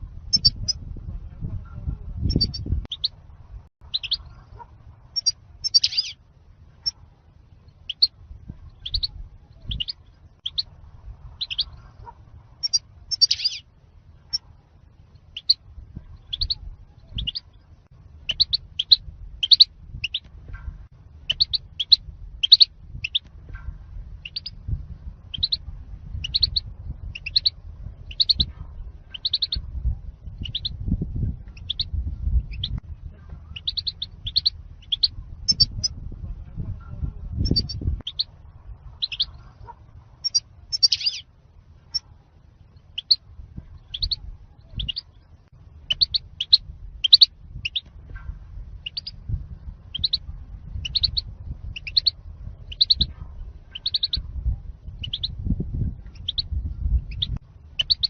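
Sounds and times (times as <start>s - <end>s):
faint low rumble: 0.0s - 58.0s
goldfinch high chirping song: 0.3s - 0.8s, 2.3s - 3.1s, 3.9s - 4.3s, 5.2s - 6.2s, 7.7s - 8.1s, 8.7s - 10.7s, 11.4s - 11.8s, 12.6s - 13.6s, 15.3s - 15.6s, 16.2s - 17.6s, 18.3s - 20.3s, 21.3s - 23.3s, 24.2s - 24.6s, 25.3s - 25.6s, 26.2s - 28.5s, 29.1s - 29.6s, 30.4s - 30.8s, 31.5s - 32.8s, 33.6s - 35.9s, 39.0s - 39.4s, 40.2s - 41.3s, 42.7s - 43.2s, 43.8s - 45.2s, 45.8s - 47.9s, 48.8s - 49.2s, 49.9s - 53.1s, 53.7s - 54.2s, 54.9s - 55.4s, 56.0s - 58.0s.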